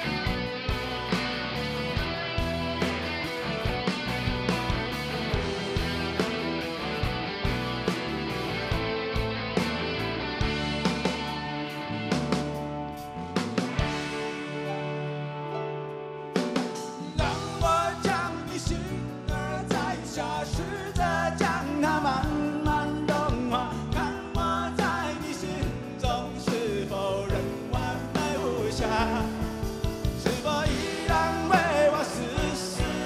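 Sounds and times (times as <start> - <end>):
rock band playing: 0.0 - 33.0.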